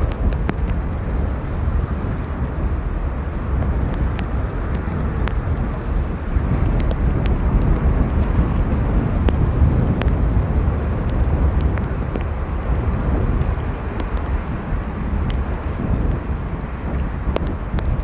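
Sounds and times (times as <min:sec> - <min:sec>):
raindrops ticking: 0:00.0 - 0:18.0
wind buffeting microphone: 0:00.0 - 0:18.0.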